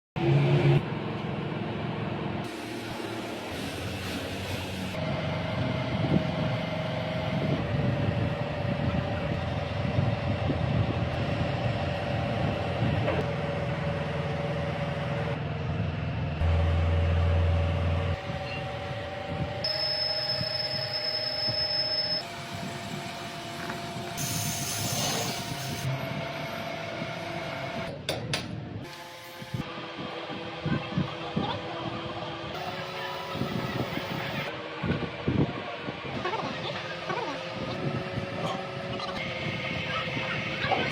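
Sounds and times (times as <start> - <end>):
heavy low hum: 0.2 - 20.0
hiss: 2.5 - 5.0, 24.1 - 25.9
high steady whine: 16.4 - 27.6, 29.0 - 40.9.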